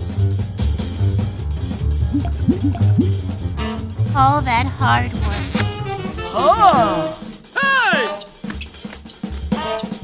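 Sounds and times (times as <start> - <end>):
cartoon music with bass line: 1.8 - 7.2
short wet blips: 2.2 - 3.2.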